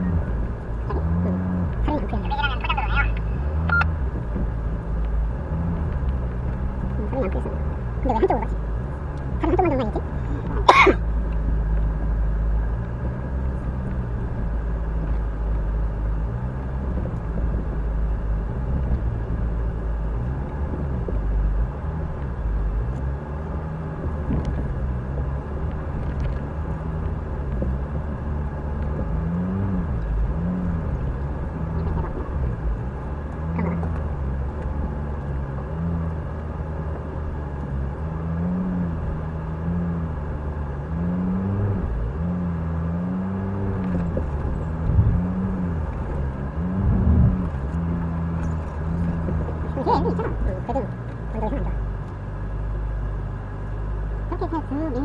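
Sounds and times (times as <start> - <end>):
off-road vehicle engine at low revs: 0.0 - 55.0.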